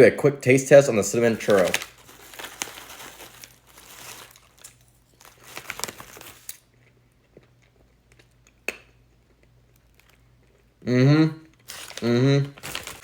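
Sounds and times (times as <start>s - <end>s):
plastic bag crinkling: 1.0s - 6.7s, 11.6s - 13.0s
seeds cracked and chewed: 1.8s - 10.6s.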